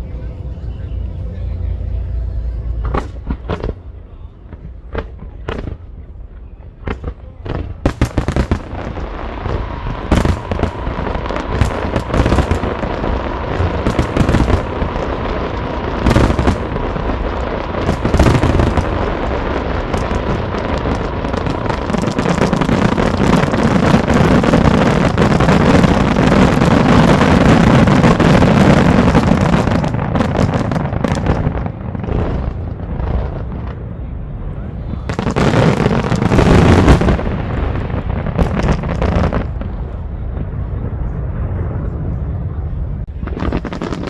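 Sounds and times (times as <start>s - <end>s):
fireworks bangs and crackles: 2.6s - 44.0s.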